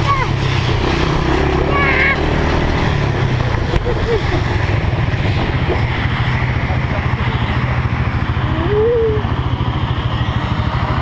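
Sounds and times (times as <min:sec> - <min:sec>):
quad bike engine putter: 0:00.0 - 0:06.0.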